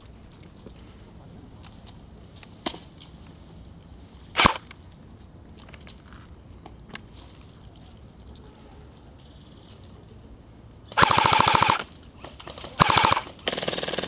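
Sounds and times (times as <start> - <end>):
airsoft gun shots: 4.4 - 4.6, 11.0 - 11.8, 12.8 - 14.0.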